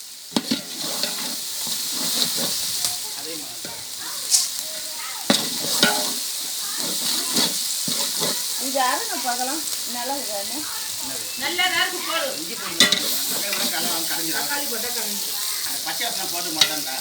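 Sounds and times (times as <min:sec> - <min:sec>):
food sizzling in hot oil: 0:00.0 - 0:17.0
spoon knocking against pot: 0:05.3 - 0:06.2, 0:12.8 - 0:13.1.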